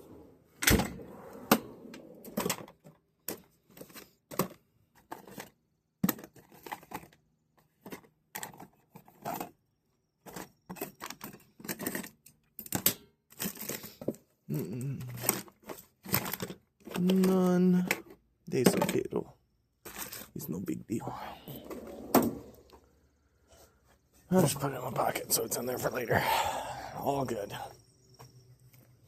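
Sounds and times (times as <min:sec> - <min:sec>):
small tools clattering: 0:10.2 - 0:14.2, 0:14.9 - 0:20.4.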